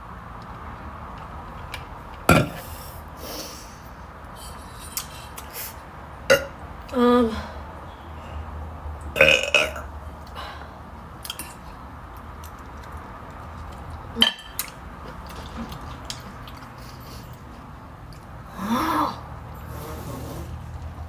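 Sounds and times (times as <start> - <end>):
person burping: 2.3 - 2.7, 6.3 - 6.6, 9.2 - 9.9.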